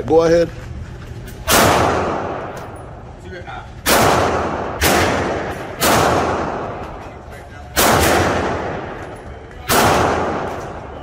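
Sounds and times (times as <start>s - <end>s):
gunshots: 1.5s - 2.7s, 3.8s - 7.0s, 7.7s - 11.0s.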